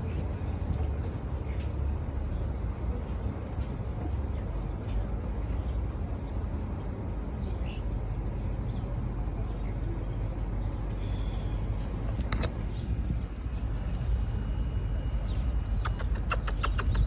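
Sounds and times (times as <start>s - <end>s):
low outdoor rumble: 0.0s - 17.0s
faint bird chirps: 12.6s - 17.0s.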